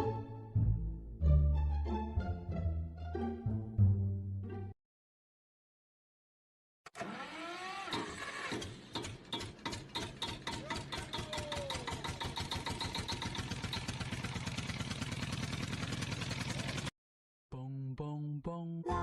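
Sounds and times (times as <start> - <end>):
small engine running: 6.9 - 16.9.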